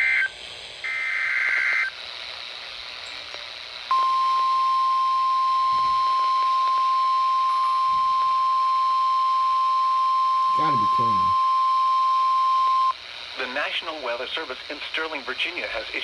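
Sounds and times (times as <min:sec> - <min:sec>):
steady alarm beep: 0:03.9 - 0:12.9
faint radio static: 0:04.5 - 0:11.5, 0:12.7 - 0:16.0.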